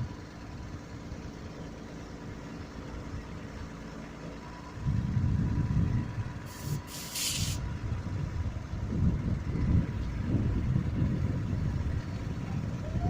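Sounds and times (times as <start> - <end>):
heavy engine rumbling under load: 0.0 - 13.0
air hiss: 6.5 - 7.6.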